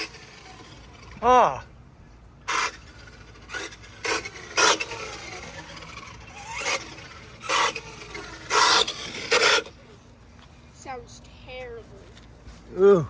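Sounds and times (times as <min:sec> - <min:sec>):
rc car drivetrain grinding: 0:00.0 - 0:01.5, 0:02.4 - 0:09.9.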